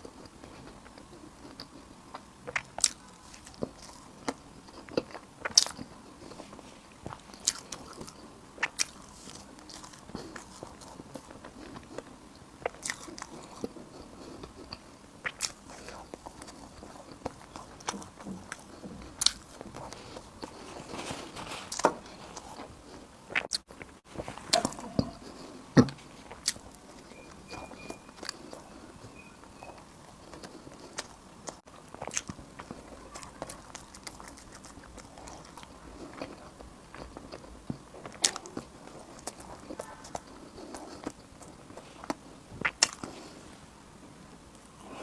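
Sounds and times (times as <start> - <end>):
person chewing crunchy food: 0.0 - 43.6.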